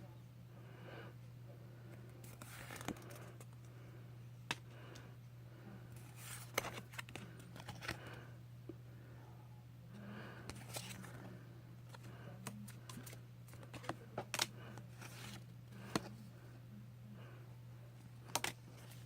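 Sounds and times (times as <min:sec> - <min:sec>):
steady low hum: 0:00.0 - 0:19.0
cards clicking and snapping: 0:02.3 - 0:03.6, 0:10.5 - 0:11.2, 0:11.9 - 0:16.1, 0:18.2 - 0:19.0.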